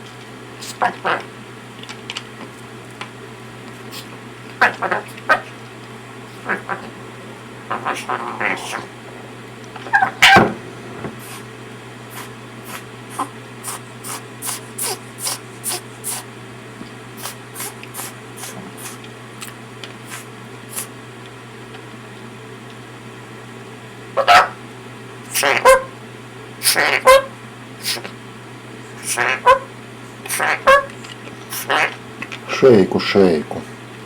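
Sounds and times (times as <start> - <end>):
steady low hum: 0.0 - 34.0
parrot harsh call: 6.4 - 9.0, 9.9 - 10.5, 12.2 - 16.2, 24.2 - 24.6, 25.3 - 26.0, 26.6 - 28.1, 29.0 - 29.7, 30.3 - 32.0.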